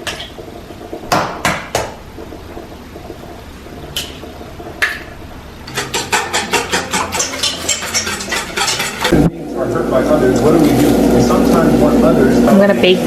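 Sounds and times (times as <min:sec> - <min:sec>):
utensil knocking rapidly: 0:00.0 - 0:03.9, 0:05.7 - 0:09.2.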